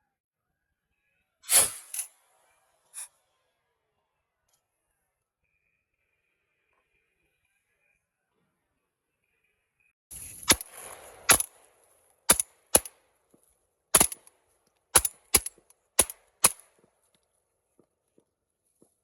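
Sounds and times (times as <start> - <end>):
shotgun shots: 10.3 - 13.0, 14.0 - 14.3, 15.0 - 16.7.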